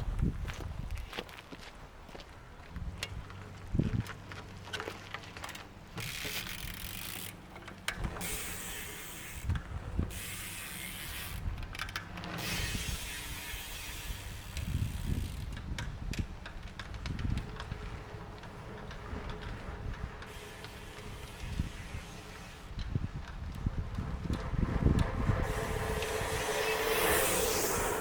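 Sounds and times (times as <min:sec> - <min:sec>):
bicycle hub ratchet clicking: 0:06.0 - 0:23.6, 0:24.2 - 0:28.0.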